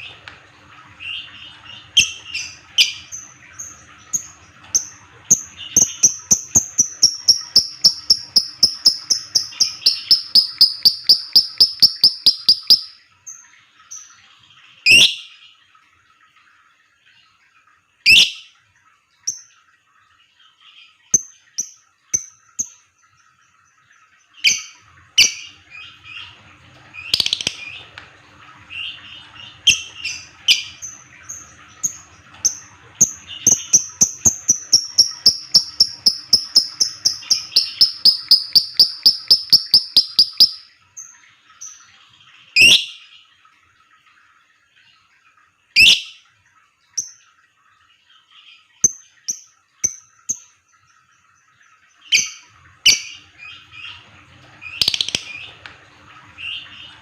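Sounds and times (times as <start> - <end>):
lovebirds chirping: 5.7 - 13.0, 33.4 - 40.6.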